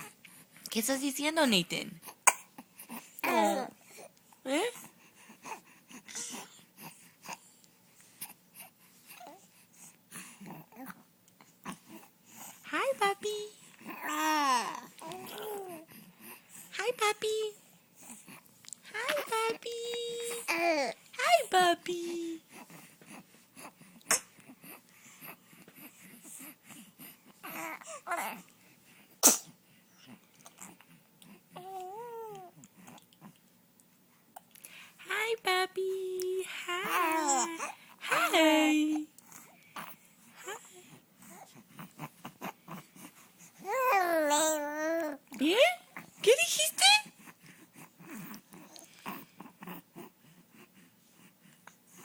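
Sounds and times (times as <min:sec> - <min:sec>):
baby sneezing: 0:02.2 - 0:02.5, 0:24.1 - 0:24.3, 0:29.2 - 0:29.6
baby whimpering: 0:02.3 - 0:03.9, 0:13.8 - 0:15.9, 0:18.9 - 0:21.0, 0:27.4 - 0:28.5, 0:31.6 - 0:32.6, 0:36.5 - 0:39.1, 0:43.6 - 0:45.2
baby cooing: 0:03.2 - 0:03.8, 0:18.9 - 0:21.0, 0:36.6 - 0:38.3, 0:43.6 - 0:45.2.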